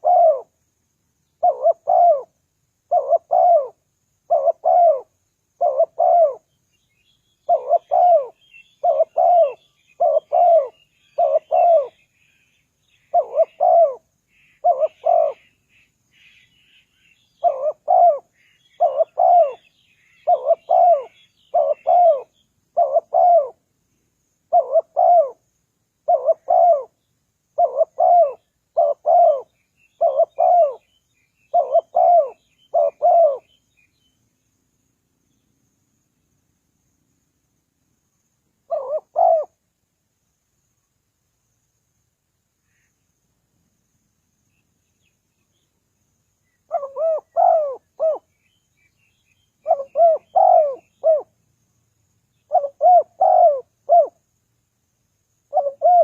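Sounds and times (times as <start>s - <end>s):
dove cooing: 0.0s - 0.6s, 1.4s - 6.5s, 7.4s - 12.0s, 13.0s - 15.6s, 16.8s - 23.6s, 24.5s - 25.4s, 26.0s - 27.0s, 27.6s - 30.9s, 31.5s - 33.6s, 38.6s - 39.6s, 46.6s - 48.3s, 49.6s - 51.3s, 52.5s - 54.2s, 55.5s - 56.0s
small birds chirping: 0.0s - 25.4s, 26.0s - 36.5s, 42.6s - 54.2s.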